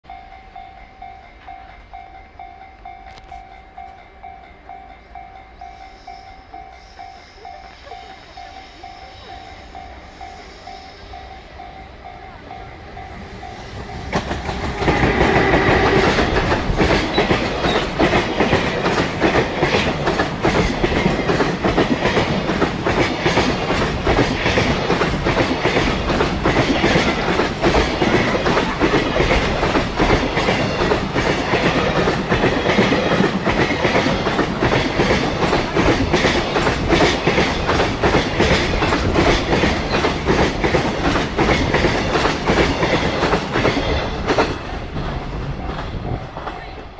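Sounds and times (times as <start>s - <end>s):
level crossing warning bell: 0.0s - 14.4s
train wheels clickety-clack: 2.8s - 10.8s, 12.2s - 46.9s.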